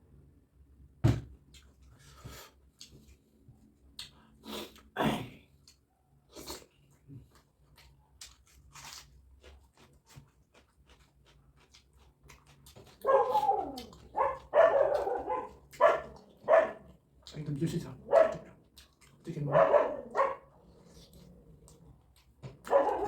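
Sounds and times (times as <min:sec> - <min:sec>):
chewing and mouth clicks: 0:03.9 - 0:04.2, 0:06.4 - 0:19.5, 0:20.1 - 0:23.0
dog whining: 0:13.0 - 0:16.8
dog barking: 0:13.0 - 0:17.0, 0:18.0 - 0:18.6, 0:19.4 - 0:20.6, 0:22.6 - 0:23.0.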